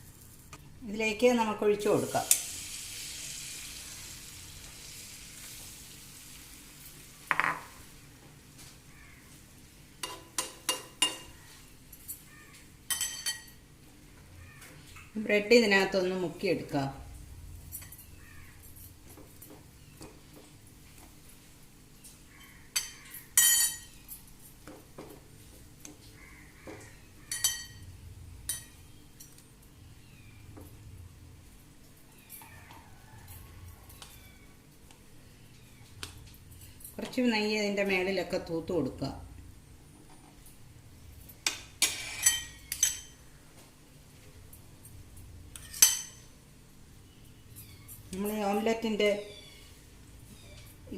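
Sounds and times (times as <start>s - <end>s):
metal utensils clinking: 12.9s - 13.6s, 27.3s - 27.8s, 41.3s - 43.2s, 45.6s - 46.3s
utensils clinking against dishes: 12.9s - 13.6s, 22.3s - 24.4s, 27.2s - 27.9s, 28.5s - 29.4s, 41.2s - 43.2s, 44.8s - 46.4s.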